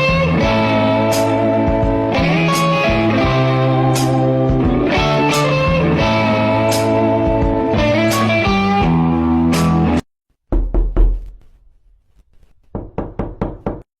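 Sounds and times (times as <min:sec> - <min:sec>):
guitar and plucked strings music: 0:00.0 - 0:10.0.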